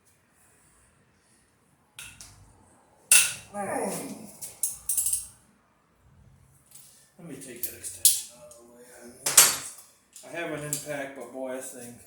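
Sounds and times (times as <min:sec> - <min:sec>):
metal tools clanking on engine: 0:04.6 - 0:05.3.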